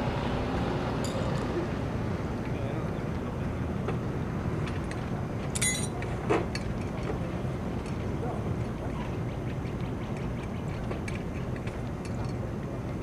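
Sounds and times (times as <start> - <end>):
high metallic ring: 5.6 - 6.0.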